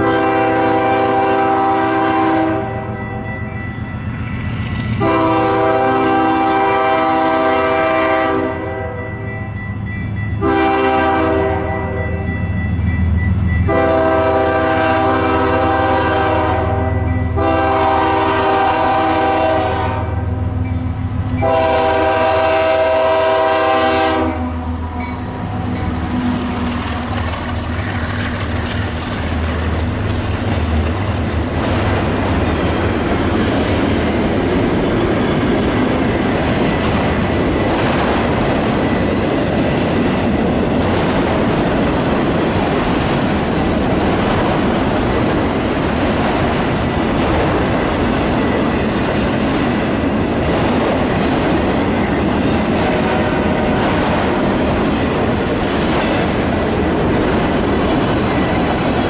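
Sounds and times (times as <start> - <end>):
train air horn blasts: 0.0 - 3.0, 5.0 - 9.2, 10.4 - 12.2, 13.7 - 20.6, 21.3 - 26.6, 52.8 - 54.2
train rumbling past: 0.0 - 59.0
wheel clatter on rails: 26.3 - 59.0.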